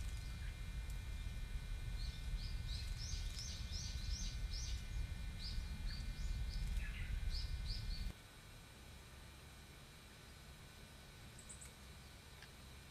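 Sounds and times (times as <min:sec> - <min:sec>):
low rumble: 0:00.0 - 0:08.1
small birds chirping: 0:00.0 - 0:08.1, 0:11.3 - 0:12.2.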